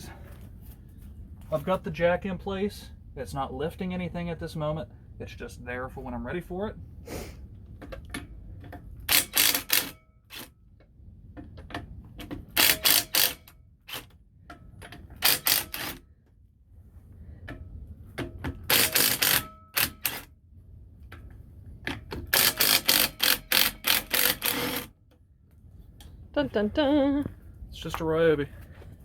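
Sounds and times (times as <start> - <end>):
impact wrench hammering: 12.2 - 14.0, 14.6 - 16.0, 18.2 - 20.3, 21.9 - 24.9.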